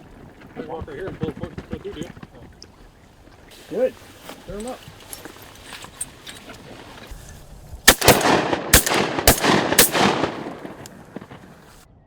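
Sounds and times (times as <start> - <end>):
shotgun shots: 7.9 - 11.8.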